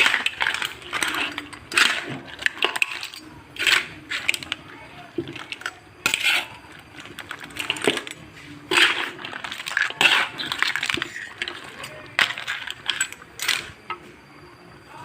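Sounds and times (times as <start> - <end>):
metal utensils scraping in a pan: 0.0 - 4.6, 5.3 - 13.8.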